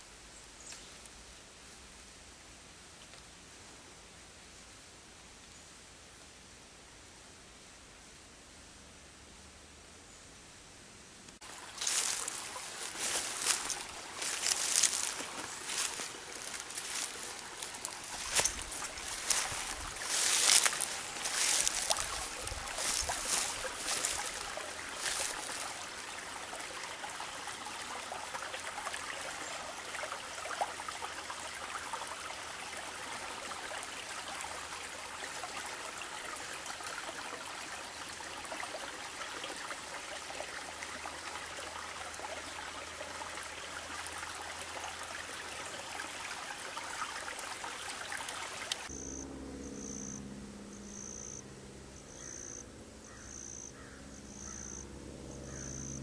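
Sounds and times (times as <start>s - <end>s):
insects chirping: 11.4s - 25.8s, 48.8s - 56.0s
stream rushing: 11.4s - 48.9s.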